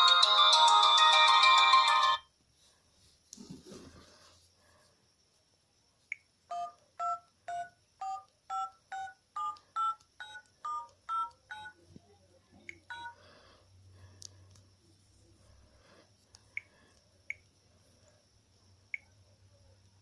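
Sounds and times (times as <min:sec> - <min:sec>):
phone keypad touch-tone beeps: 0:06.5 - 0:11.8, 0:12.7 - 0:13.2.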